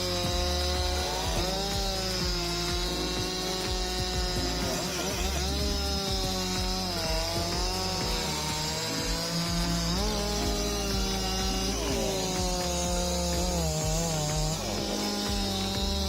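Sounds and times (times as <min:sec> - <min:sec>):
background music: 0:00.0 - 0:16.0
chainsaw cutting wood: 0:00.0 - 0:16.0.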